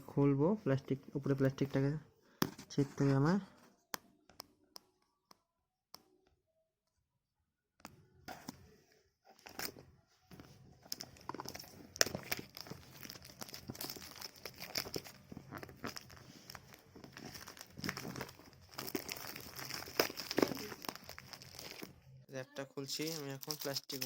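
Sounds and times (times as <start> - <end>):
plastic wrap crinkling and crackling: 10.8 - 22.2, 22.9 - 24.0.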